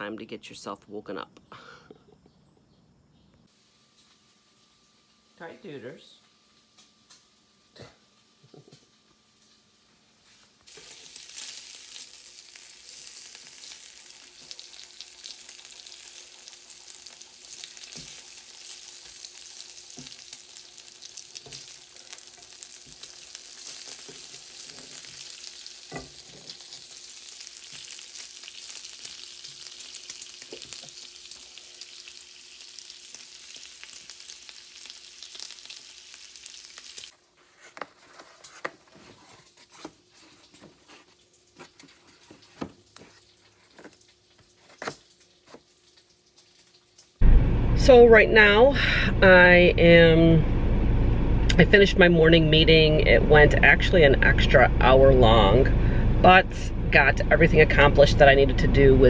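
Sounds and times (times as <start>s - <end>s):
food sizzling in a pan: 3.5s - 37.2s, 42.4s - 47.2s.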